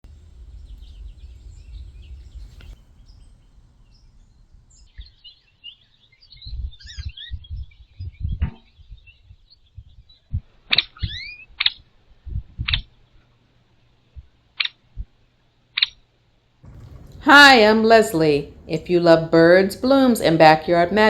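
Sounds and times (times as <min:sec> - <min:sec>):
low rumble with uneven bumps: 0:00.0 - 0:05.2, 0:16.7 - 0:21.0
small birds chirping: 0:00.0 - 0:10.3.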